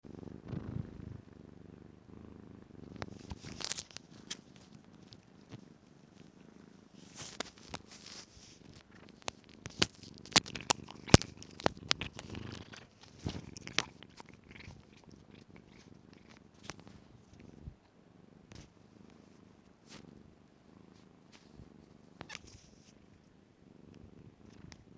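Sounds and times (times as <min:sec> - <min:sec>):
kitten purring: 0:00.0 - 0:24.9
kitten chewing clicks: 0:07.2 - 0:17.0.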